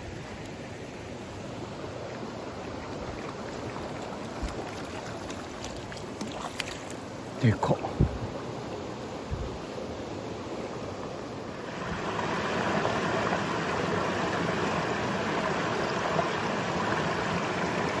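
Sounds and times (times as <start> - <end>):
stream rushing over rocks: 0.0 - 18.0.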